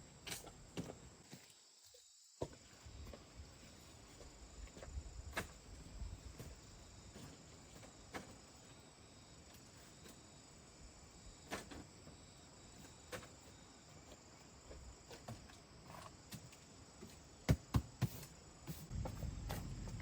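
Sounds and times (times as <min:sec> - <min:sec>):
insects chirring: 0:18.4 - 0:20.0.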